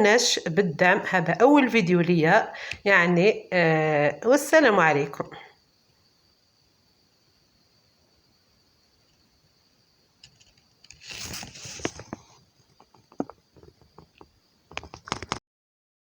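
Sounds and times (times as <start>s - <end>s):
handling rustle: 10.2s - 15.4s.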